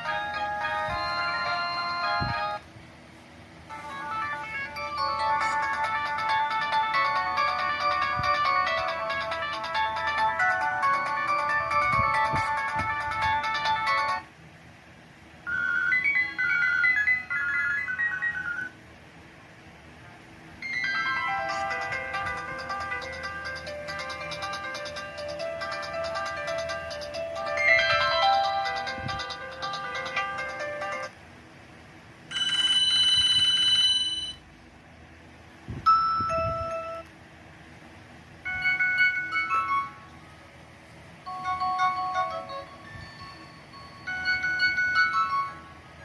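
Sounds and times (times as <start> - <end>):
electronic phone ringtones: 0.0 - 2.6, 3.7 - 14.2, 15.5 - 18.8, 20.6 - 31.1, 32.3 - 34.4, 38.5 - 40.0, 41.3 - 45.8.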